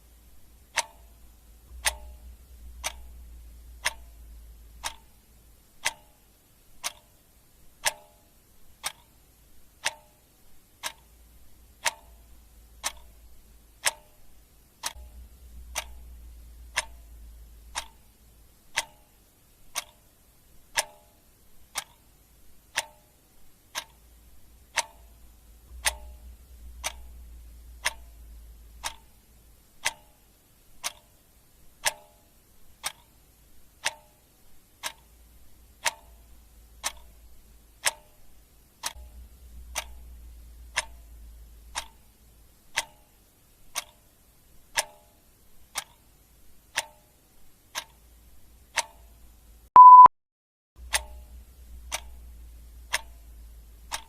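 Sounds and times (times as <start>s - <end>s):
clock ticking: 0.0s - 50.1s, 50.8s - 54.0s
short electronic beep: 49.8s - 50.1s.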